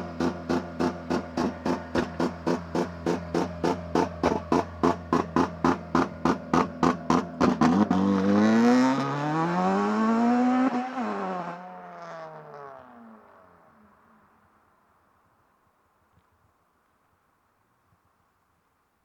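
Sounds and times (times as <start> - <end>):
exhaust crack: 0.0 - 8.0
car engine revs climbing: 0.0 - 11.6.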